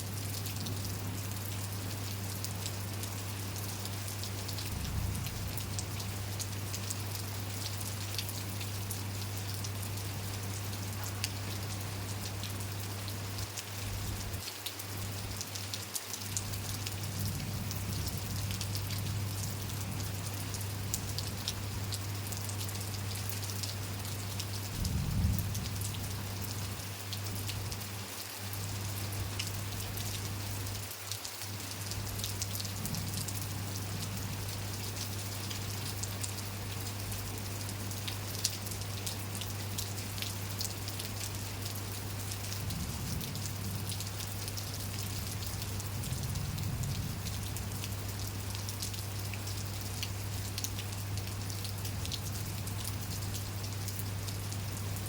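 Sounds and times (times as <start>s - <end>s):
rain drops ticking: 0.0s - 55.0s
constant low hum: 2.7s - 14.4s, 16.3s - 28.0s, 31.5s - 40.7s, 41.6s - 55.0s.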